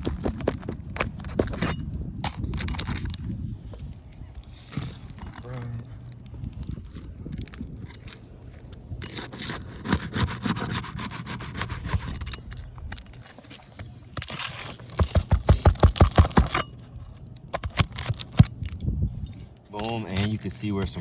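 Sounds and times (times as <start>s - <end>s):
roof tool scraping under shingles: 6.7s - 17.1s.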